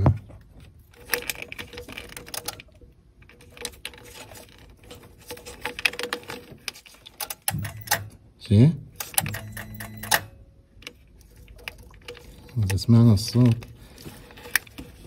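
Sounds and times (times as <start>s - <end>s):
plastic connectors clicking and rattling: 0.9s - 7.7s.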